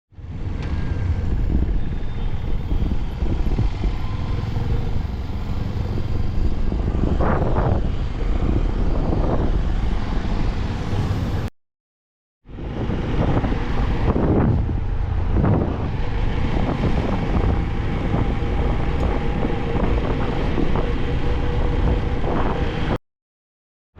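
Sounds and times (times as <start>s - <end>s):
road rumble: 0.1s - 11.5s, 12.4s - 23.0s
wind on microphone: 0.3s - 11.5s, 12.5s - 23.0s.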